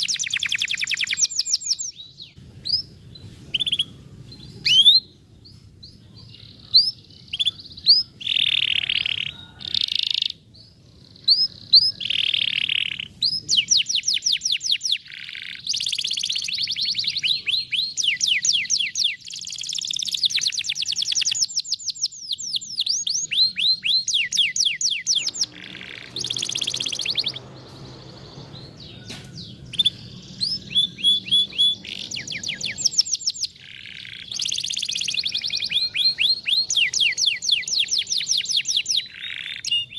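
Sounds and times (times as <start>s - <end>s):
canary singing: 0.0s - 39.9s.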